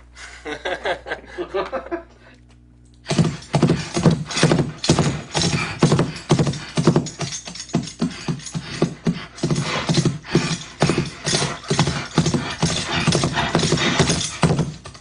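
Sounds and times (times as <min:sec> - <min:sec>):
bridle jingle: 0:03.1 - 0:15.0
horse hoofbeats: 0:03.1 - 0:15.0.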